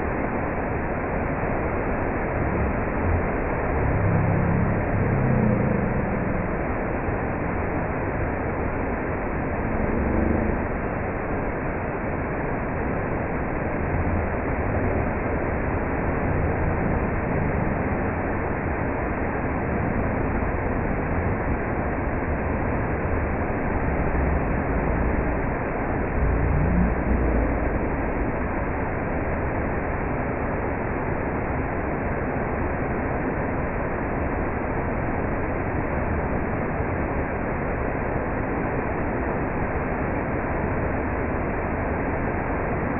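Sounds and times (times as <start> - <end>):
low rumbles: 0.0 - 30.0.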